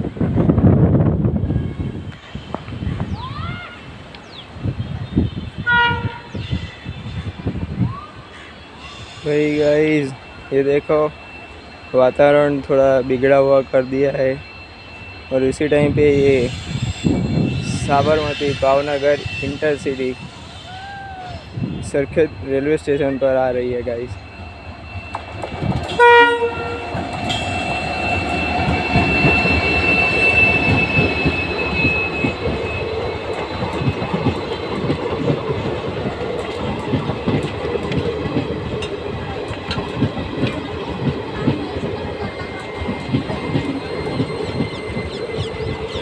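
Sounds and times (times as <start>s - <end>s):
train horn blast: 5.1s - 7.4s, 16.0s - 20.8s, 25.8s - 32.8s
thin high squeal: 11.2s - 26.0s, 26.6s - 34.8s, 42.1s - 46.0s
train wheels clattering over rails: 24.8s - 46.0s.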